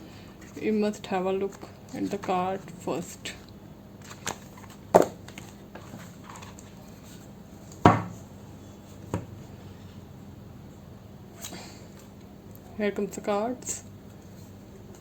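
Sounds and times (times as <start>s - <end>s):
box knocking on tabletop: 7.8s - 8.1s.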